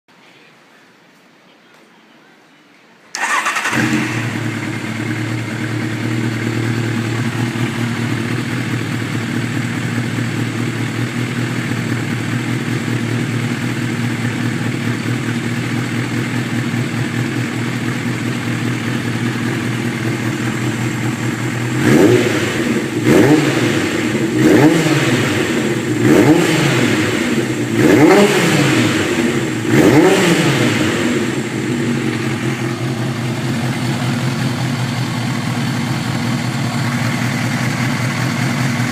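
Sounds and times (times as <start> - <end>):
motorcycle engine starting and idling: 3.1 - 38.9
engine revving: 3.2 - 7.6, 21.1 - 33.3.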